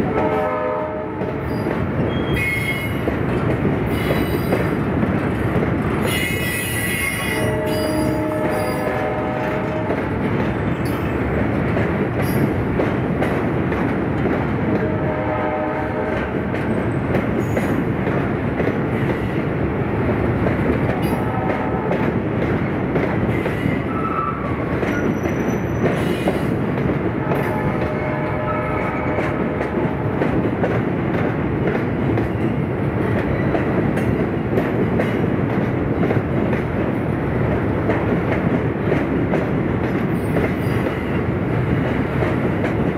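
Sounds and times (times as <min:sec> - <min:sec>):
rail joint clicks: 0:00.0 - 0:42.9
train wheels rumbling on track: 0:00.0 - 0:42.9
wheel squeals: 0:24.9 - 0:26.1.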